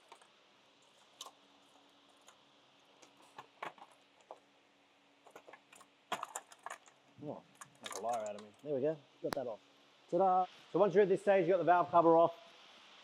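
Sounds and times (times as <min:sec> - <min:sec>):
metal parts and tools clicking: 0:07.6 - 0:08.6.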